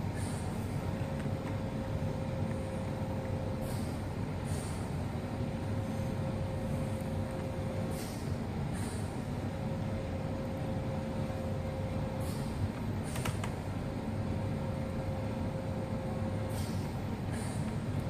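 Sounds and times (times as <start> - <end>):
low background hum: 0.0 - 18.0.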